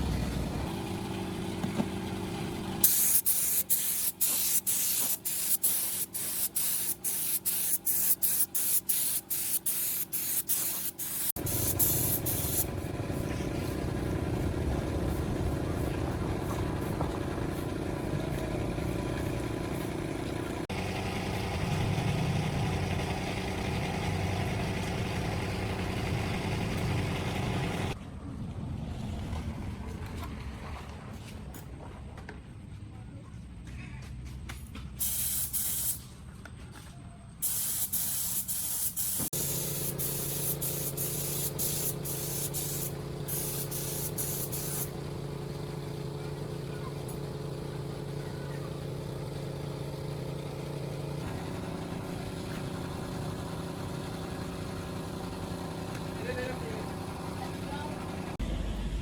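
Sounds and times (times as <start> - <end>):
high spraying hiss in bursts: 2.8 - 12.9, 35.0 - 36.0, 37.4 - 45.4
dull rushing noise: 11.4 - 30.6.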